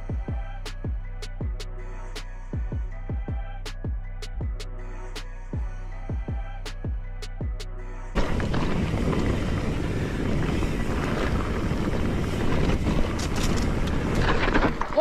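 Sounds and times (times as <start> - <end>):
boat moving at speed: 8.2 - 15.0
wind buffeting microphone: 8.2 - 15.0.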